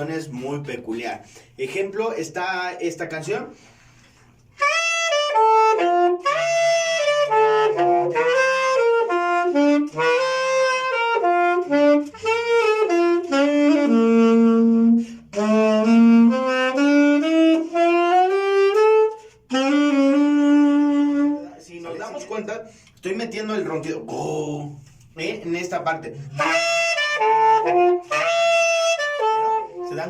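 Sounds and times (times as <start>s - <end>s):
solo saxophone melody: 4.5s - 22.8s, 26.1s - 30.0s.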